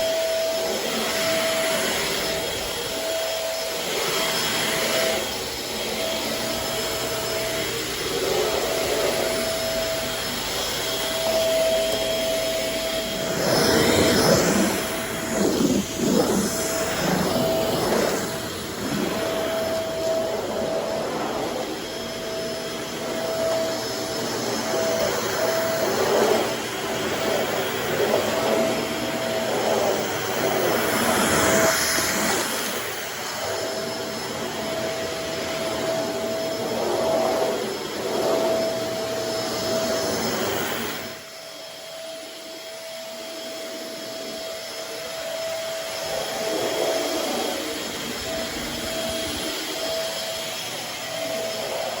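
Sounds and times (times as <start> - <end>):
vacuum cleaner running: 0.0 - 52.0.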